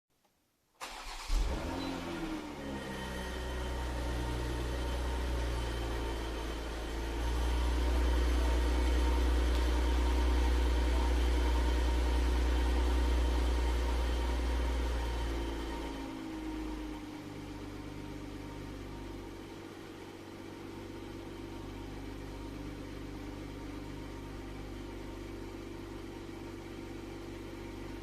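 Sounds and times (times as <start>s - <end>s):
car engine idling: 0.8s - 28.0s.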